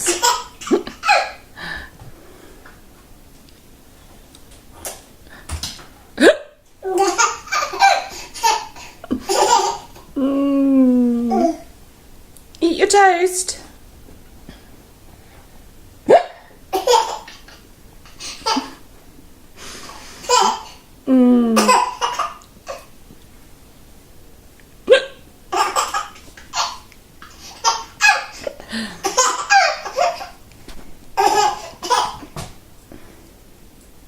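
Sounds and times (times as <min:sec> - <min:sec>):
baby laughing: 0:00.0 - 0:01.5, 0:06.2 - 0:10.1, 0:11.3 - 0:11.7, 0:16.2 - 0:18.8, 0:20.2 - 0:20.9, 0:21.6 - 0:22.9, 0:25.5 - 0:30.4, 0:31.2 - 0:32.4
woman hiccuping: 0:06.2 - 0:06.6, 0:16.1 - 0:16.4, 0:24.9 - 0:25.2.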